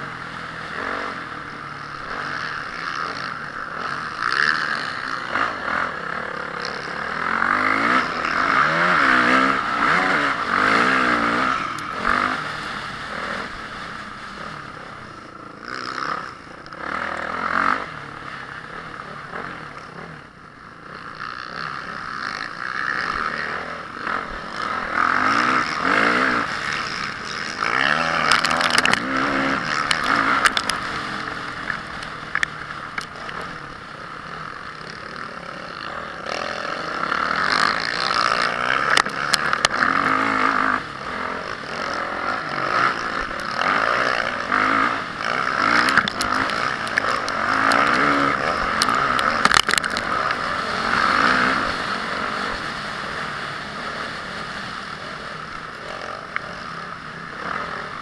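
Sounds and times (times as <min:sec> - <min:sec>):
motocross engine revving: 0:00.0 - 0:58.0
steady rushing noise: 0:00.0 - 0:58.0
sharp clacks: 0:45.8 - 0:50.8.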